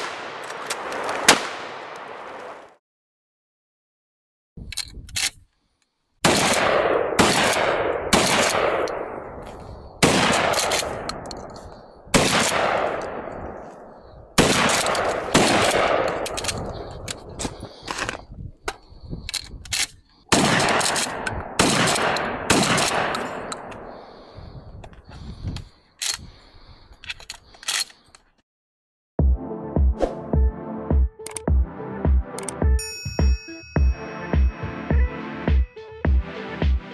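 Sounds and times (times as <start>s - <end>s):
heavy gunshots echoing: 0.0s - 2.6s, 6.2s - 11.3s, 12.1s - 17.0s, 20.3s - 23.9s
small mechanical clicks: 4.6s - 5.5s.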